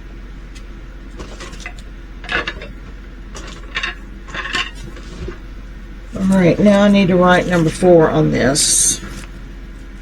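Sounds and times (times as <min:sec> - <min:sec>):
plastic bags rustling and clicking: 0:00.6 - 0:05.5.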